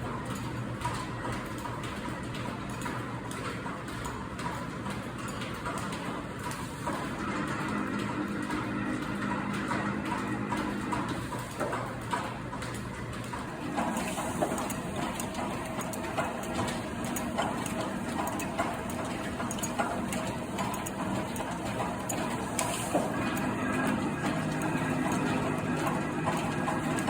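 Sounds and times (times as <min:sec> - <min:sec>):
metal planer machine hum: 0:13.5 - 0:27.0.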